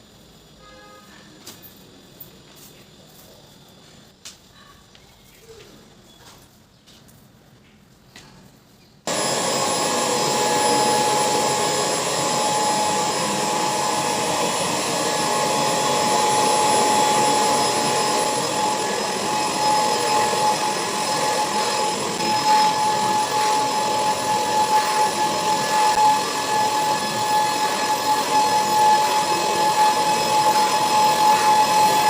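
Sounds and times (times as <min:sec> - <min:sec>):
vacuum cleaner running: 0:09.1 - 0:32.0.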